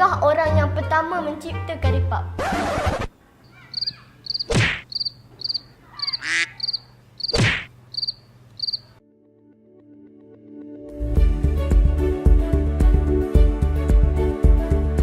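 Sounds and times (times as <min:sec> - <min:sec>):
cricket chirps: 0:03.4 - 0:09.0.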